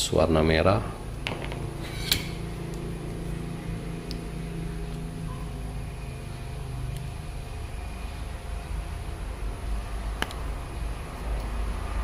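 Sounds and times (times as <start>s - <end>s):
low mechanical hum: 0.0s - 12.0s.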